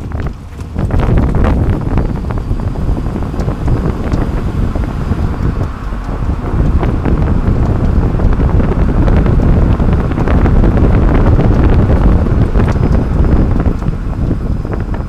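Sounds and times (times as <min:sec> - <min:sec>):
road rumble: 0:00.0 - 0:15.0
wind buffeting: 0:00.0 - 0:15.0.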